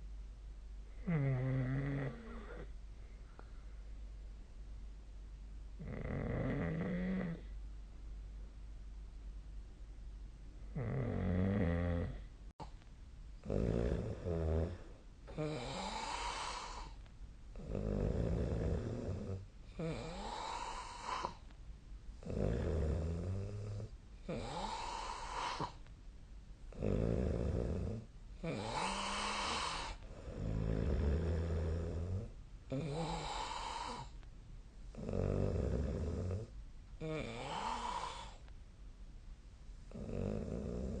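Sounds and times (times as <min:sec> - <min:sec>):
person snoring: 0:01.0 - 0:02.7, 0:05.8 - 0:07.5, 0:10.7 - 0:12.3, 0:13.4 - 0:17.0, 0:17.6 - 0:21.4, 0:22.2 - 0:25.8, 0:26.7 - 0:34.2, 0:34.9 - 0:38.4, 0:39.9 - 0:41.0.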